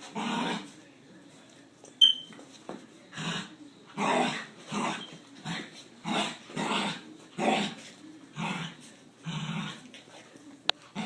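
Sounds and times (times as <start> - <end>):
dogs growling: 0.0 - 0.8, 3.1 - 11.0.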